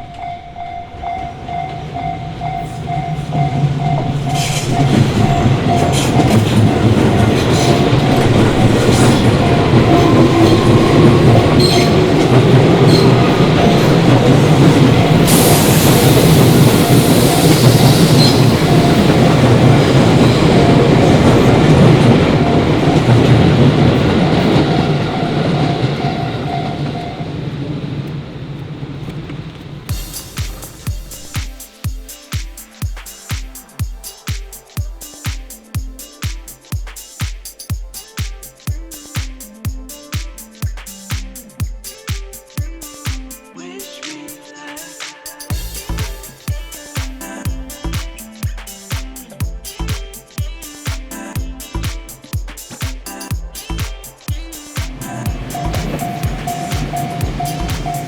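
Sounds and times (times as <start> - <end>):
level crossing bell ringing: 0.0 - 15.3, 55.0 - 58.0
electric train passing: 0.0 - 58.0
train wheels clacking on rails: 0.0 - 58.0.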